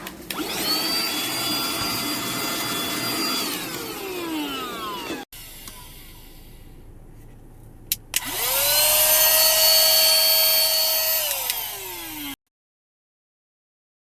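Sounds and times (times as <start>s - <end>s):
handheld vacuum motor whining: 0.3s - 6.6s, 8.2s - 12.4s.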